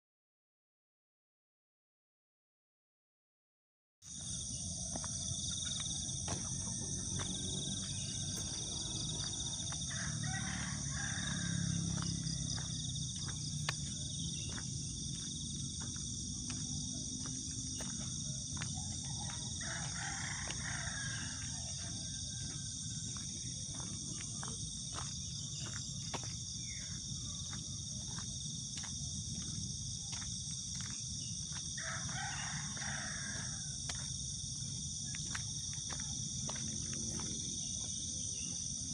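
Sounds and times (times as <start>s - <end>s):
high-pitched insect drone: 4.1s - 38.9s
rooster crowing: 6.0s - 13.4s, 18.2s - 23.8s, 31.7s - 33.8s.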